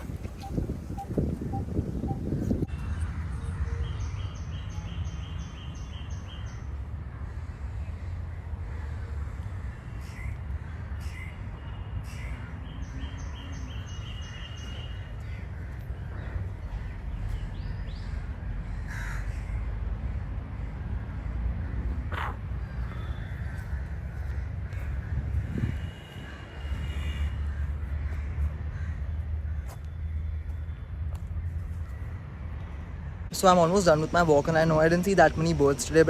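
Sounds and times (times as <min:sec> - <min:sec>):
bird calling quick notes: 0:00.0 - 0:02.6.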